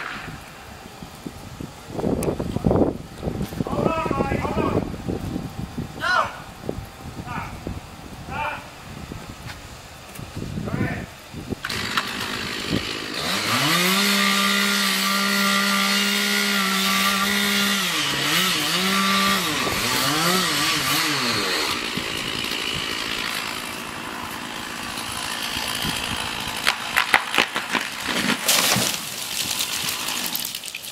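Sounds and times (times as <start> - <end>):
small engine revving: 11.6 - 26.7.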